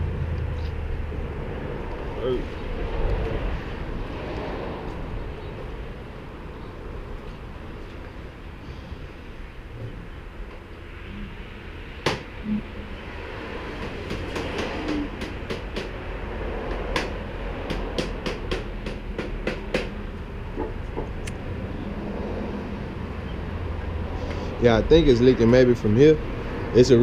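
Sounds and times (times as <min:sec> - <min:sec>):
low mechanical rumble: 0:00.0 - 0:27.0.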